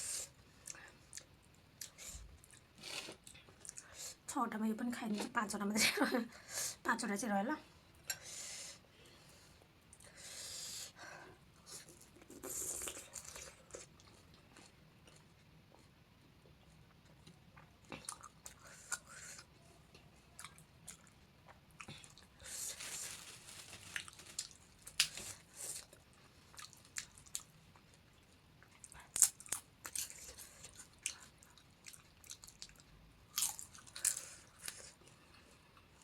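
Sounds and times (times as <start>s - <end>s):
person chewing crisp food: 11.6s - 15.9s, 16.9s - 36.0s
crunching of fried shells: 21.8s - 27.5s, 28.6s - 35.2s.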